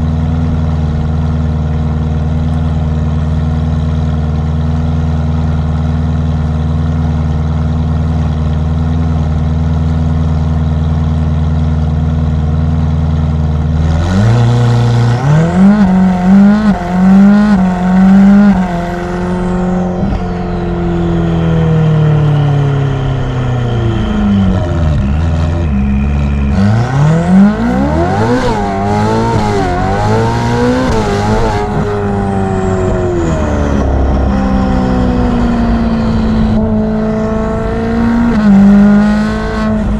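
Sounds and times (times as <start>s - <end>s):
car engine idling and revving: 0.0s - 39.9s
turbo whistle: 20.0s - 36.7s.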